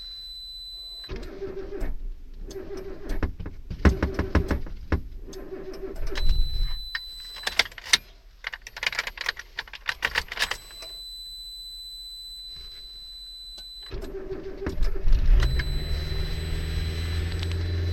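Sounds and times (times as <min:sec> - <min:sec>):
car starter cranking: 0:01.1 - 0:10.9, 0:13.9 - 0:17.9
sharp clicks: 0:05.3 - 0:11.0, 0:13.6 - 0:17.9
keys jangling: 0:07.4 - 0:10.6.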